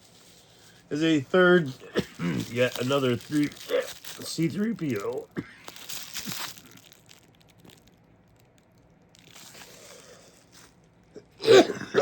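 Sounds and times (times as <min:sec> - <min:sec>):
plastic packaging crinkling: 0:00.0 - 0:11.1
person clearing throat: 0:01.8 - 0:02.6, 0:03.4 - 0:04.0, 0:05.3 - 0:05.7, 0:11.2 - 0:12.0.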